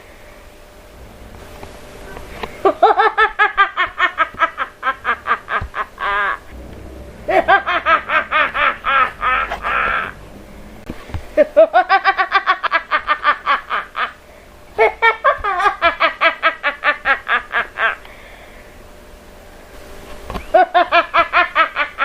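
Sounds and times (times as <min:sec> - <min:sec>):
woman laughing maniacally: 0:02.6 - 0:06.6, 0:07.2 - 0:10.2, 0:11.4 - 0:14.2, 0:14.8 - 0:18.0, 0:20.5 - 0:22.0
woman breathing: 0:18.0 - 0:18.8.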